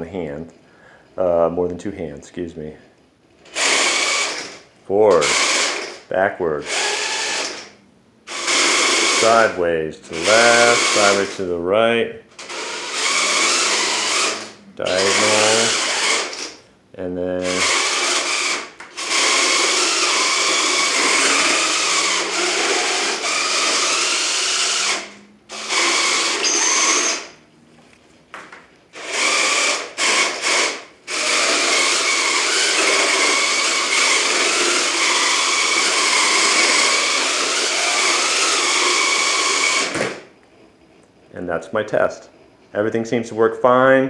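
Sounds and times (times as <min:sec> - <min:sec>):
robot drive motors whirring: 0:17.5 - 0:27.3, 0:29.0 - 0:40.2.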